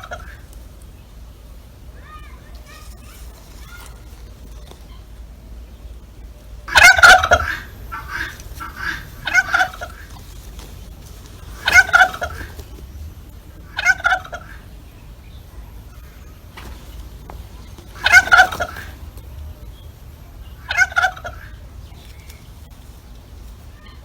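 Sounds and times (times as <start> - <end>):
turkey gobbling: 0.0 - 24.0
soft short turkey calls: 6.4 - 12.7.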